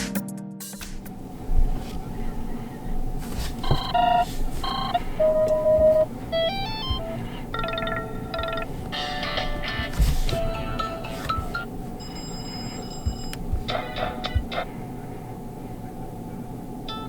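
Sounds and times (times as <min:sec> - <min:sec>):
low background hiss: 0:01.1 - 0:17.0
dull thump: 0:03.1 - 0:07.4, 0:08.6 - 0:11.7
electronic ringtone melody: 0:03.7 - 0:09.3.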